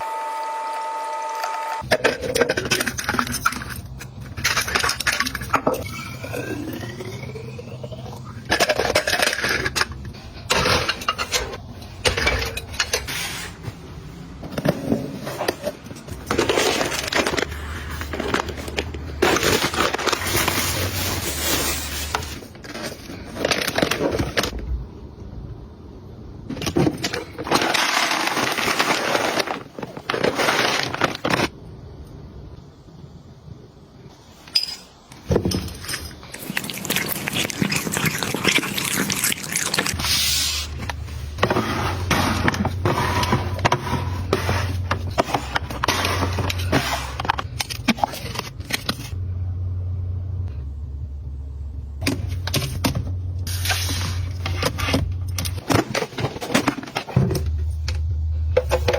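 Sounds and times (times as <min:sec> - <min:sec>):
packaging crinkling and rustling: 0:14.5 - 0:24.6, 0:26.6 - 0:31.5, 0:35.8 - 0:49.2.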